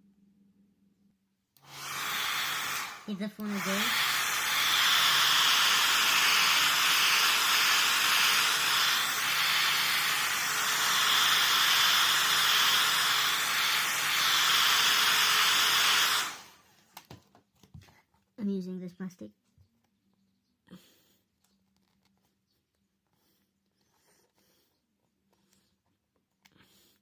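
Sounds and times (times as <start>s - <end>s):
hot air gun blowing: 1.6s - 16.7s.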